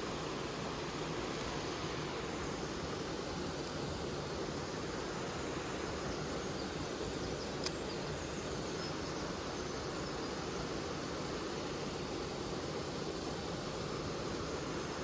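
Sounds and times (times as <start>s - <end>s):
stream flowing over rocks: 0.0s - 15.0s
sharp click: 7.6s - 7.8s.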